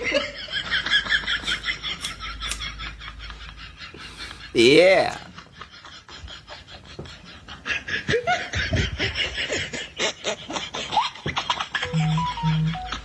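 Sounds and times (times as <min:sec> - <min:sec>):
short electronic tones: 0:11.8 - 0:13.0.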